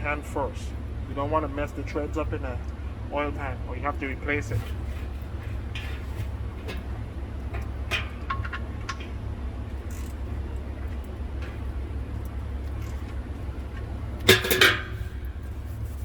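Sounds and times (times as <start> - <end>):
low hum of shop: 0.0 - 16.0
metal clanking: 4.6 - 11.8, 13.8 - 15.7.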